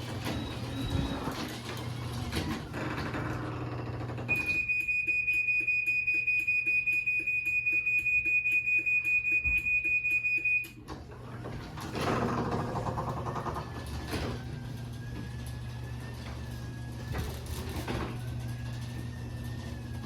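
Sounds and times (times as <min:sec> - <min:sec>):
garage door opener motor humming: 0:00.0 - 0:05.3, 0:10.7 - 0:20.0.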